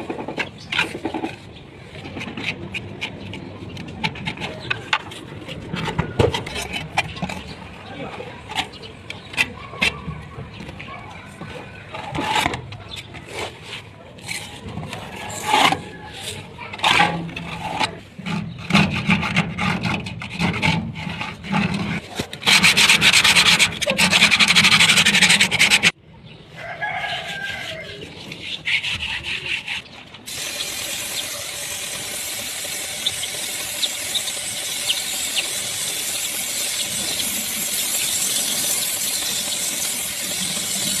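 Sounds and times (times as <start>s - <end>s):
hand scraping a surface: 12.0s - 26.0s, 27.0s - 41.0s
steady even hiss: 30.3s - 41.0s.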